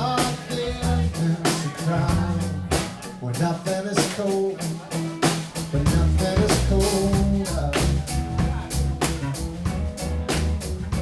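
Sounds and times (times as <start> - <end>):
live band playing: 0.0 - 11.0.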